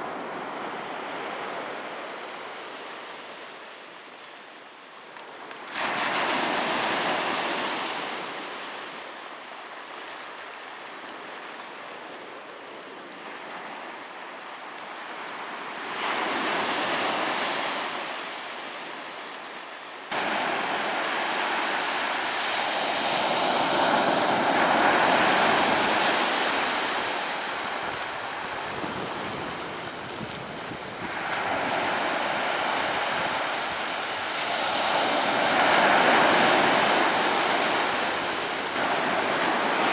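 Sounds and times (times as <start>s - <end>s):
ocean waves breaking on shore: 5.5s - 9.0s, 15.0s - 39.9s.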